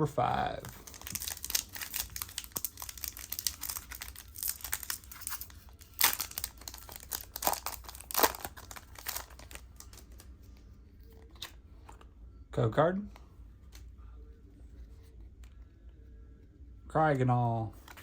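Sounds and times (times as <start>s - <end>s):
foil wrapper crinkling and tearing: 0.8s - 10.3s
sharp foil rips: 0.9s - 9.6s.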